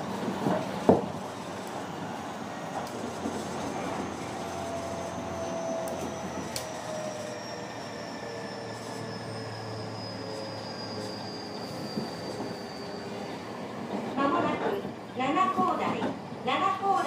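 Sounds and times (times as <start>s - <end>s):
train wheels on rails: 0.0s - 17.0s
electric train motor whine: 1.2s - 13.6s.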